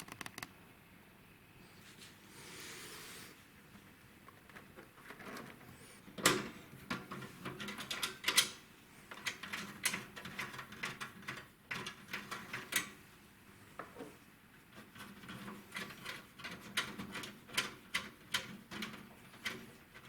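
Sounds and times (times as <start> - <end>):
computer parts clicking and rattling: 0.0 - 0.5, 4.3 - 13.0, 14.7 - 20.0.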